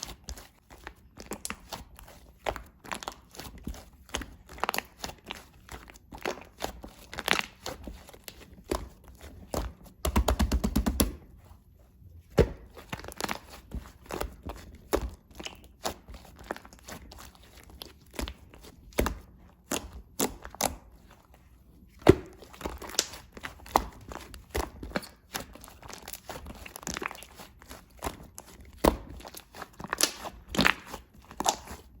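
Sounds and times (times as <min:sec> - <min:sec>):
slime squished by hand: 0:21.9 - 0:32.0.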